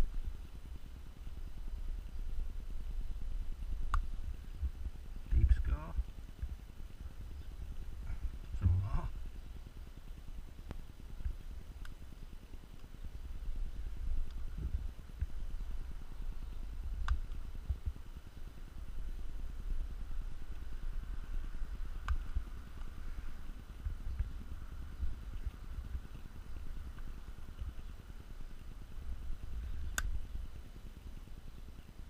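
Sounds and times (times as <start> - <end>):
sharp clicks: 29.8 - 30.2.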